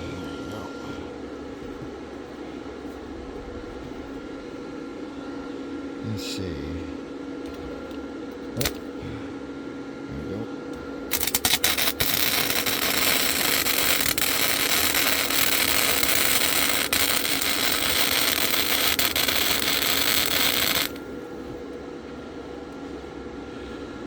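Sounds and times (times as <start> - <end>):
quiet steady hum: 0.0 - 24.0
welder arc crackling and hissing: 8.6 - 8.9, 11.0 - 21.1.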